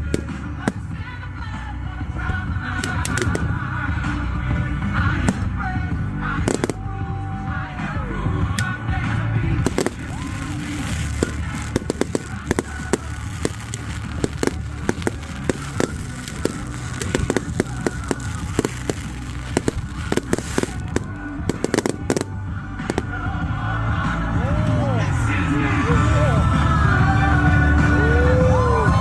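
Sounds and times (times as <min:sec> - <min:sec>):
fireworks bangs and crackles: 0:00.0 - 0:01.1, 0:02.3 - 0:07.2, 0:09.0 - 0:23.5
music playing: 0:00.0 - 0:29.0.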